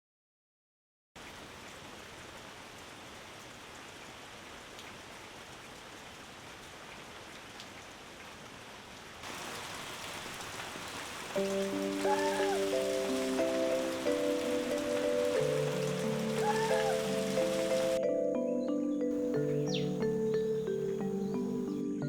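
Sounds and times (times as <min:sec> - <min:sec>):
rain falling: 0:01.2 - 0:18.0, 0:19.2 - 0:21.8
raindrop ticks: 0:04.0 - 0:08.4, 0:09.2 - 0:18.0
music: 0:11.4 - 0:22.0.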